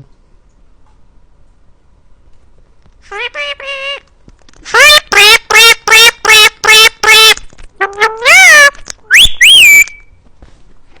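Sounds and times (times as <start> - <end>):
parrot calling loudly: 3.1 - 4.1, 4.7 - 10.1.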